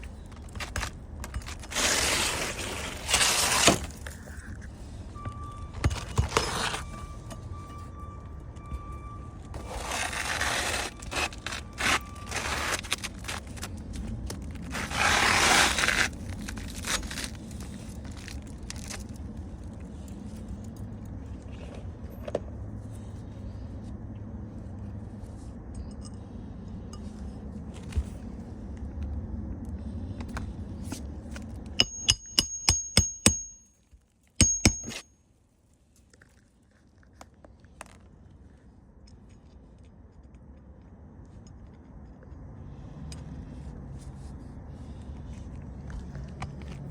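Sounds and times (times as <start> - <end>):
roof shingles scraping and clattering: 0.3 - 4.1, 9.6 - 13.7
sharp metal strikes ringing: 31.8 - 33.7, 34.4 - 35.0.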